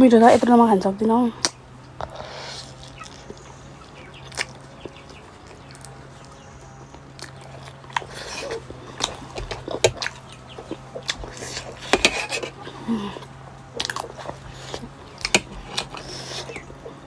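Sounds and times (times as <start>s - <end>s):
faint low hum: 0.0s - 17.0s
lip smacks: 1.4s - 6.3s, 7.1s - 16.7s
chewing with wet clicks: 2.7s - 12.0s, 13.2s - 17.0s.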